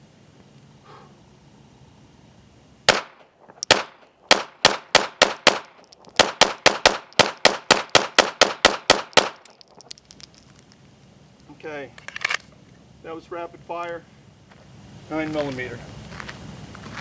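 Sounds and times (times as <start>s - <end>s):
pistol shots: 2.9s - 9.6s.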